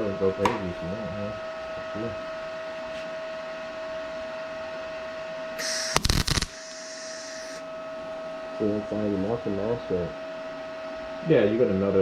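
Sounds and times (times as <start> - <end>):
electrical hum with whine: 0.0 - 12.0
welding arc crackling: 5.6 - 7.6.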